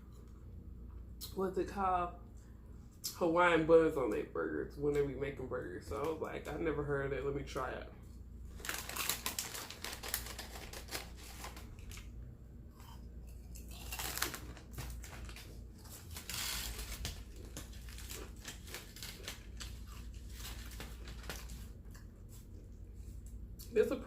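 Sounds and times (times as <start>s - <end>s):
close chewing with crunches: 12.7s - 23.7s.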